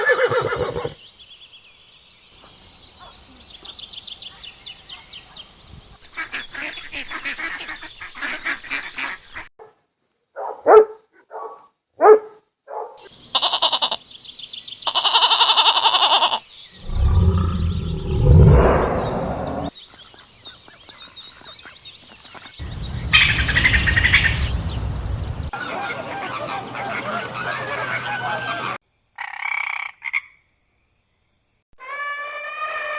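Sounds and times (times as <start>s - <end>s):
farm animals calling: 0.0s - 1.0s, 22.6s - 28.8s
birds calling: 0.0s - 1.1s, 16.7s - 19.7s, 22.6s - 28.8s.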